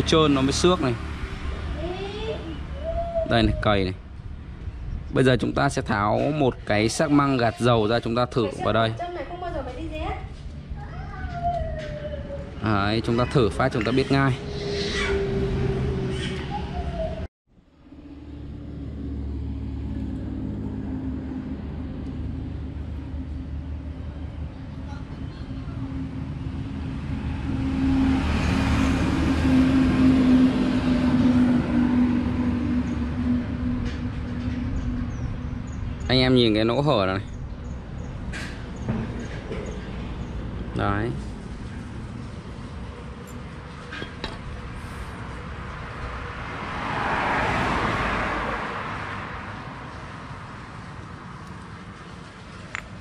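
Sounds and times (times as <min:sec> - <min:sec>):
vehicle passing by: 0:00.0 - 0:08.9, 0:11.5 - 0:53.0
low traffic rumble: 0:00.0 - 0:53.0
vehicle engine running: 0:17.7 - 0:36.1.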